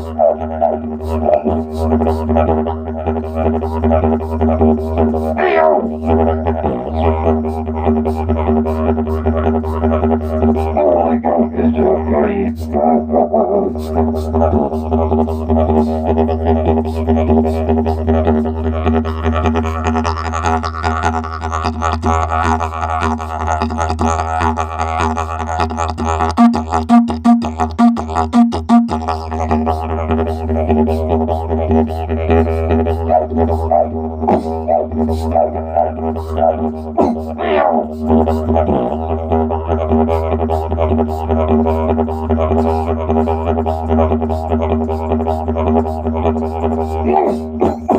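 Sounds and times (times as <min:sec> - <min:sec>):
didgeridoo drone: 0:00.0 - 0:47.9
voice through didgeridoo: 0:00.0 - 0:47.9.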